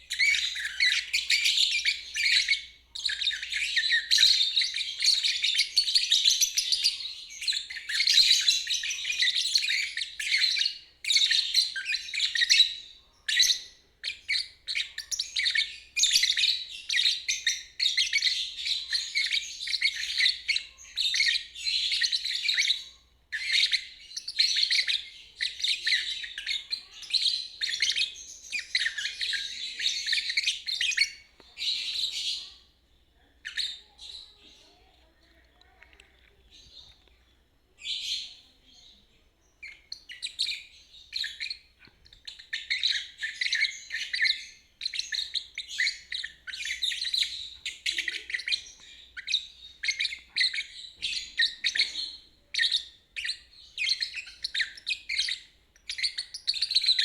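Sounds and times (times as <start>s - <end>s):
lovebird chattering trills: 39.6s - 57.0s.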